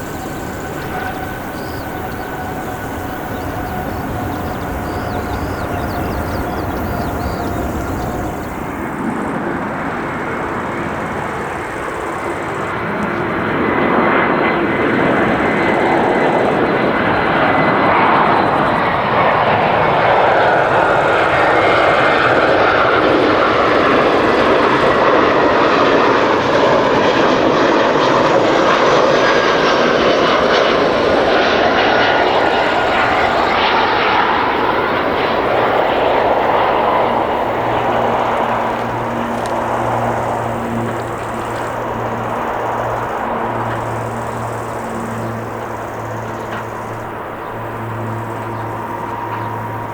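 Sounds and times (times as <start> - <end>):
jet airliner passing: 0.0 - 49.9.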